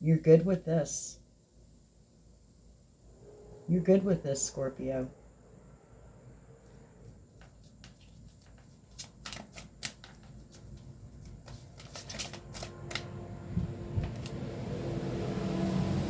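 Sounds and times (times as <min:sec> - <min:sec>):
cards being shuffled: 0:07.4 - 0:13.2
low rumble: 0:12.9 - 0:16.0.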